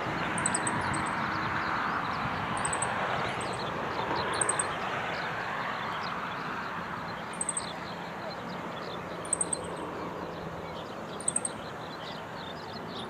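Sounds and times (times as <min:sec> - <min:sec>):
rushing background noise: 0:00.0 - 0:13.0
bird singing high notes: 0:00.4 - 0:01.1, 0:09.3 - 0:09.7.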